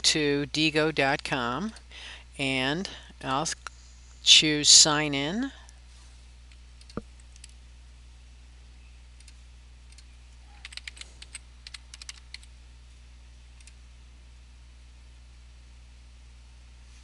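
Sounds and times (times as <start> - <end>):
faint low hum: 0.0 - 17.0
keyboard typing: 10.6 - 12.5.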